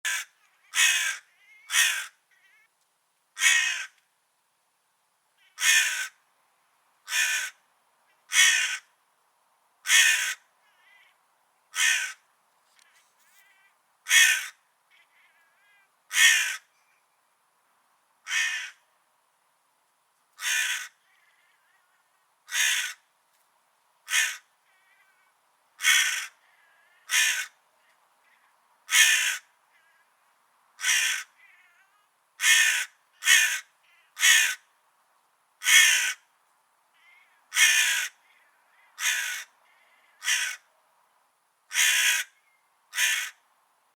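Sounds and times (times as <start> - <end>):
crow cawing: 0.0 - 2.6, 3.4 - 4.0, 5.4 - 6.2, 7.1 - 7.6, 8.3 - 8.9, 9.8 - 11.1, 11.7 - 12.2, 14.1 - 16.7, 18.2 - 18.8, 20.4 - 21.8, 22.5 - 23.0, 24.1 - 27.6, 28.3 - 30.1, 30.8 - 34.7, 35.6 - 36.3, 37.0 - 40.7, 41.7 - 43.4.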